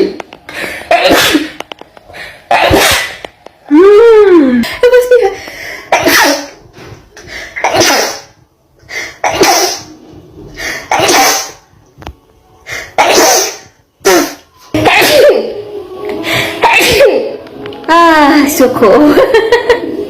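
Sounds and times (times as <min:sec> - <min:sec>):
woman sneezing: 0:00.9 - 0:01.6, 0:02.5 - 0:03.2, 0:05.9 - 0:06.6, 0:07.6 - 0:08.3, 0:09.2 - 0:09.9, 0:10.9 - 0:11.6, 0:13.0 - 0:15.5, 0:16.6 - 0:17.3.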